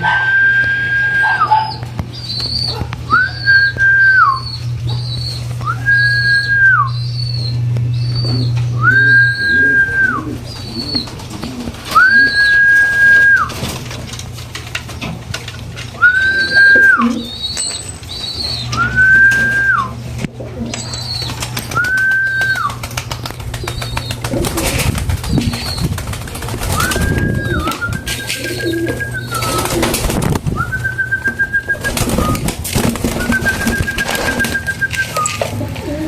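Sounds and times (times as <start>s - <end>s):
pigeon cooing: 0.0s - 13.7s, 16.0s - 36.0s
bird whistled notes: 0.2s - 11.0s, 26.7s - 29.8s.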